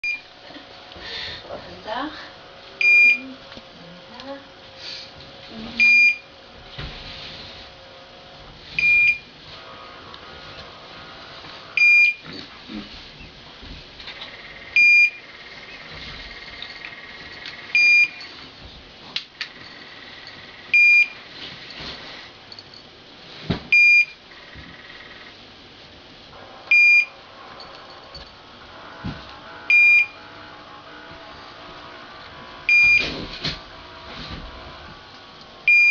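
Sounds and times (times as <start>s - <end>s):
refrigerator alarm beeping: 0.0s - 0.3s, 2.8s - 3.4s, 5.8s - 6.3s, 8.8s - 9.3s, 11.8s - 12.3s, 14.4s - 18.4s, 19.6s - 21.8s, 23.7s - 24.2s, 26.7s - 28.4s, 29.5s - 31.3s, 32.7s - 33.2s, 35.6s - 35.9s.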